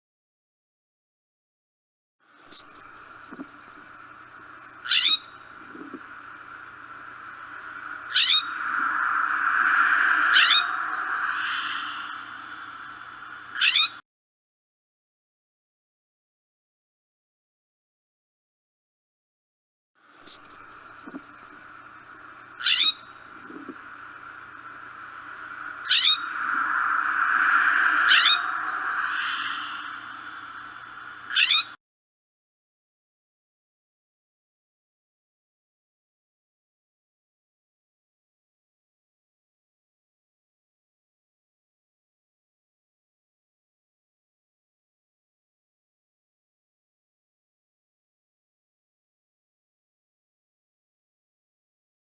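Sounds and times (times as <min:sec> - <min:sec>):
steady hiss: 0:02.4 - 0:13.9, 0:20.1 - 0:31.8
jay harsh rasping calls: 0:04.8 - 0:05.3, 0:08.1 - 0:08.6, 0:10.3 - 0:12.2, 0:22.6 - 0:23.1, 0:25.8 - 0:26.4, 0:28.0 - 0:30.3, 0:31.3 - 0:31.8.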